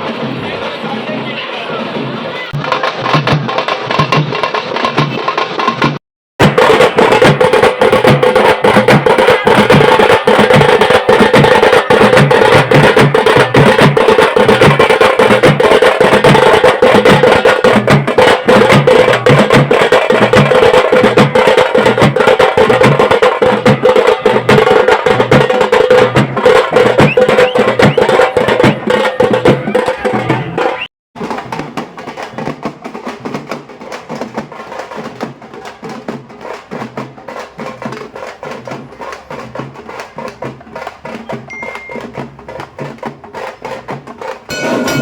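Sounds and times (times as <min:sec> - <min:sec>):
rapid drum strokes: 0:00.0 - 0:45.0
continuous held tone: 0:41.5 - 0:42.1.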